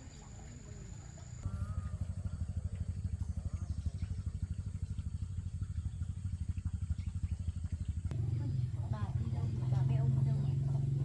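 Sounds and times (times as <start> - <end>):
small motorcycle engine running: 0.0 - 11.0.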